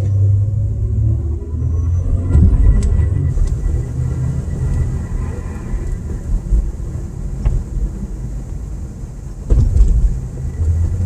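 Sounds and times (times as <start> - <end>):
car road and engine rumble: 0.0 - 11.0
car thumping over bump: 3.3 - 11.0.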